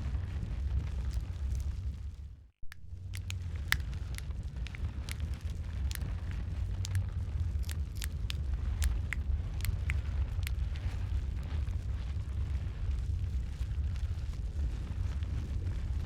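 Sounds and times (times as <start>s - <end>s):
low rumble of flames: 0.0s - 16.0s
wood fire crackling and popping: 0.1s - 16.0s.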